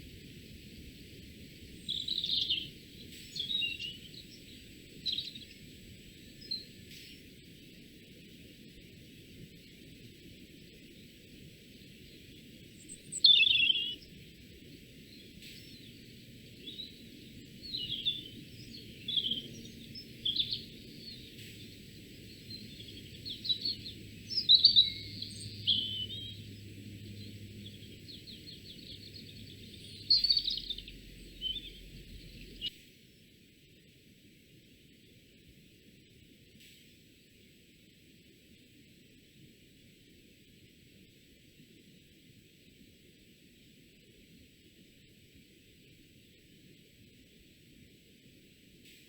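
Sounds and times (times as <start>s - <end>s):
songbirds chirping and trilling: 0.0s - 8.8s, 9.4s - 32.8s
faint high-pitched whine: 0.0s - 49.0s.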